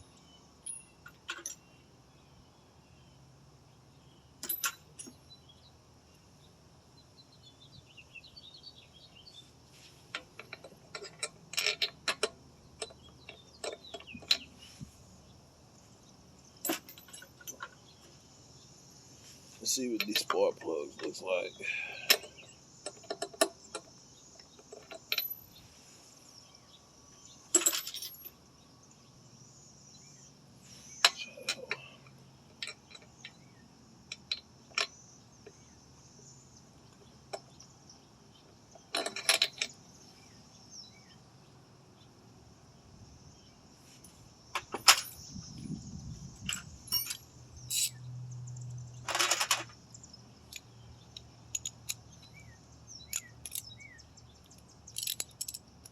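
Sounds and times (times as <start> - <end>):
insects chirring: 0.0 - 55.9
hand tools clinking on metal: 0.6 - 1.7, 4.4 - 5.2, 10.1 - 14.6, 16.6 - 17.8, 19.6 - 23.9, 24.7 - 25.6, 27.6 - 28.3, 31.0 - 33.3, 44.6 - 45.3, 46.4 - 48.0, 49.1 - 49.7, 51.5 - 52.4, 53.0 - 53.9, 54.9 - 55.9.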